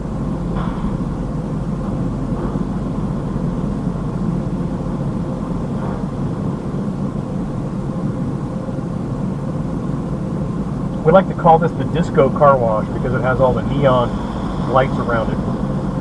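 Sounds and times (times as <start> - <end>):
car engine idling: 0.0 - 16.0.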